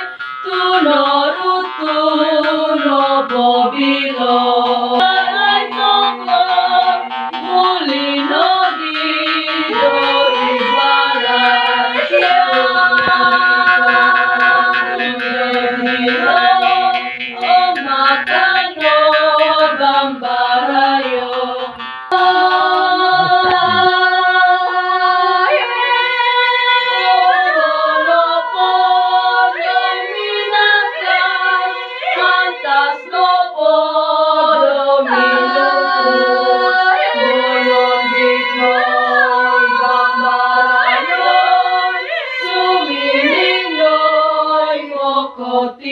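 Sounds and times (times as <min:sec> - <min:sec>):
group of voices chanting a cappella: 0:00.0 - 0:45.9.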